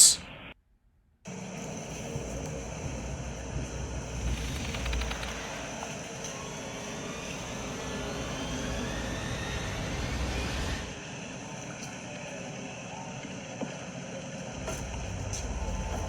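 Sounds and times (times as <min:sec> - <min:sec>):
faint rising whine: 0:01.7 - 0:11.4.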